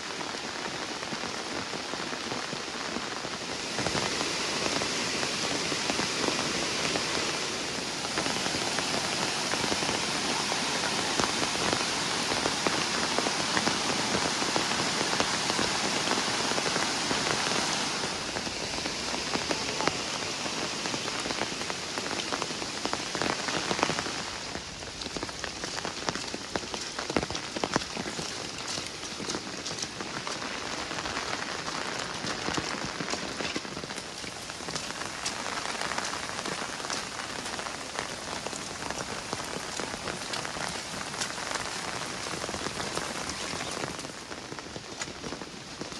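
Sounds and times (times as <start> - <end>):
steady rain: 0.0 - 45.9
raindrops clicking: 23.2 - 45.9.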